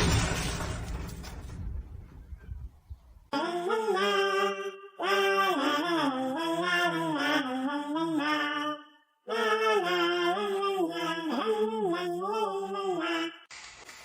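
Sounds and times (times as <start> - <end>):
wordless unaccompanied singing: 3.3 - 13.5.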